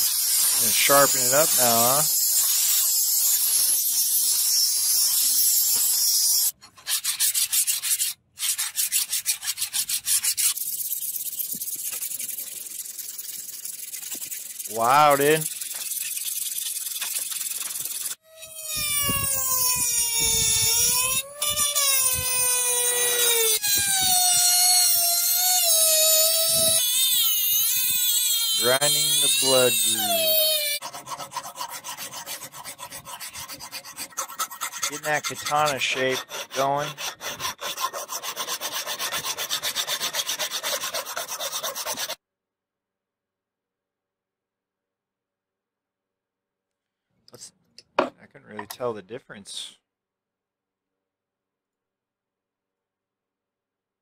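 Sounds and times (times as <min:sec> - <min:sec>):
electric grinder grinding steel: 0:00.0 - 0:06.5, 0:18.0 - 0:33.3.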